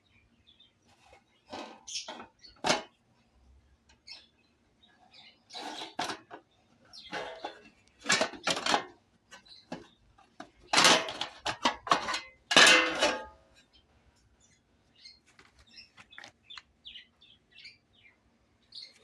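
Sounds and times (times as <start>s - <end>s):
metal tools clattering: 7.0s - 8.9s, 10.7s - 13.5s.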